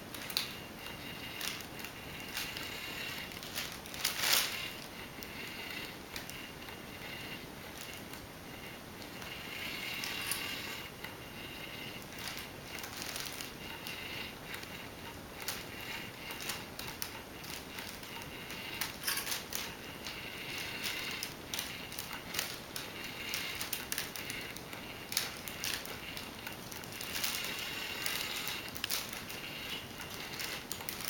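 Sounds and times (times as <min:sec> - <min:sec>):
steady hiss: 0:00.0 - 0:31.0
cat toy clicking and rattling: 0:09.0 - 0:31.0.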